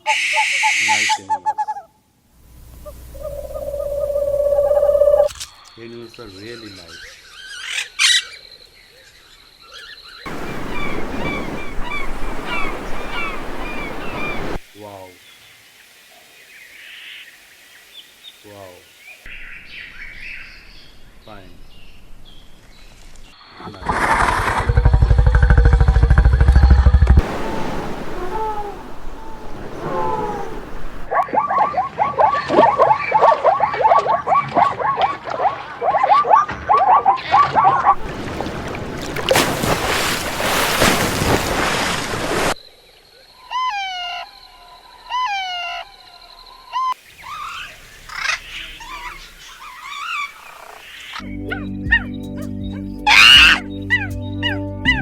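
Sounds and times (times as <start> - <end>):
faint chirping: 2.8 - 23.7
short high falling animal calls: 27.2 - 31.4.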